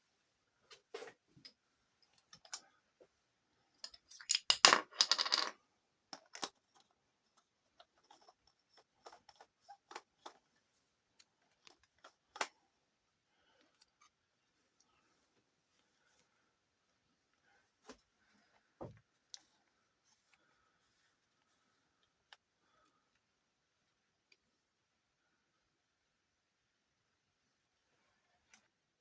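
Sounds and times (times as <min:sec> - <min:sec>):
small metal parts clinking: 0:03.8 - 0:05.5.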